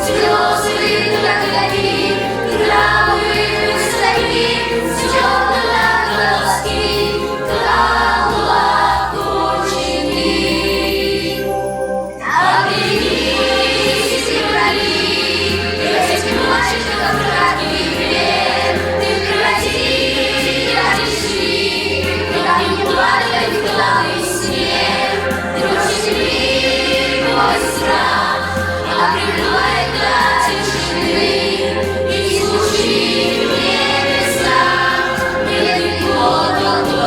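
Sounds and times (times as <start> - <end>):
choir singing over instrumental backing: 0.0 - 37.0
steady bass line: 12.5 - 37.0.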